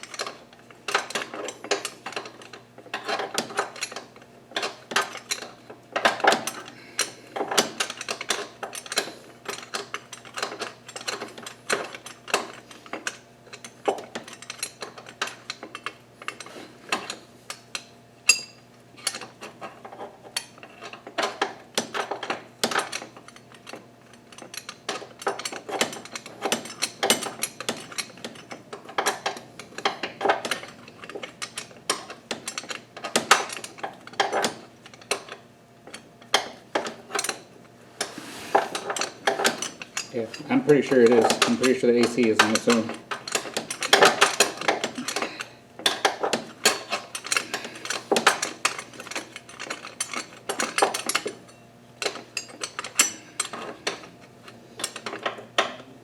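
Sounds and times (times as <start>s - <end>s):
metal tools clinking and clattering: 38.0s - 55.9s.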